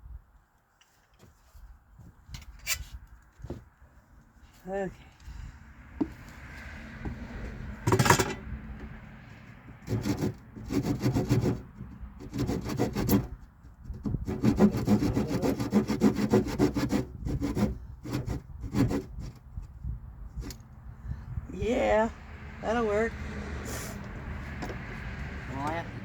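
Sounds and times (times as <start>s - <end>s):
handsaw cutting wood: 9.8s - 19.4s.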